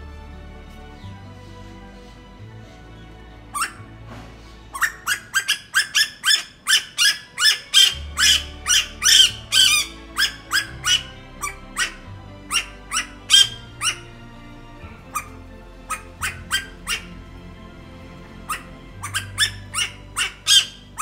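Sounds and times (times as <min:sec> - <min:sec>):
bird calling shrill rising notes: 0:04.7 - 0:14.3, 0:15.0 - 0:17.3, 0:18.4 - 0:21.0.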